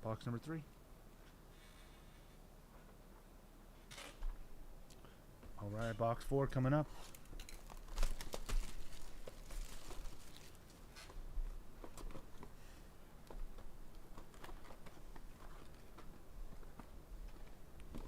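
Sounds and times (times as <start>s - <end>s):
packaging crinkling and rustling: 7.0s - 10.9s.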